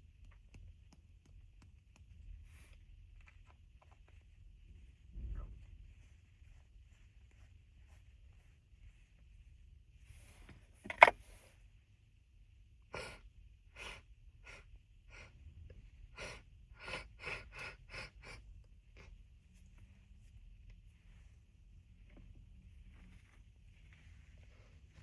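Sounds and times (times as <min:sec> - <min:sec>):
short sharp breaths through nose: 0:13.0 - 0:15.4, 0:16.1 - 0:19.1.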